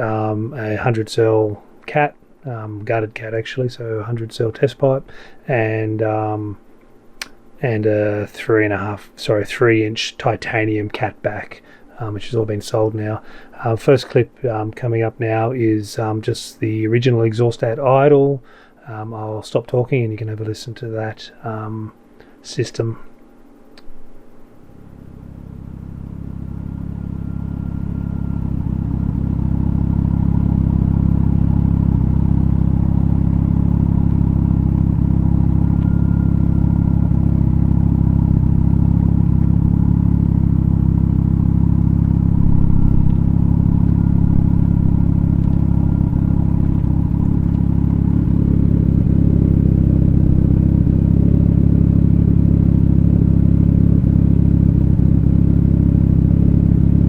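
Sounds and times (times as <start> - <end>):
car engine idling: 24.5 - 57.0.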